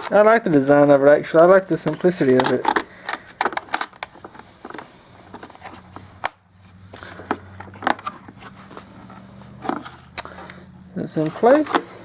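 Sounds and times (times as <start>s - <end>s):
hard plastic clicks and knocks: 1.3s - 5.5s, 7.0s - 8.3s.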